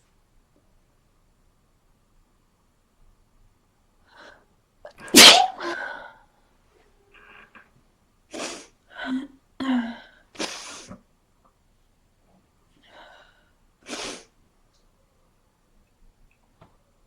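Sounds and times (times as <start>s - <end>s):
man sneezing: 5.1s - 5.8s.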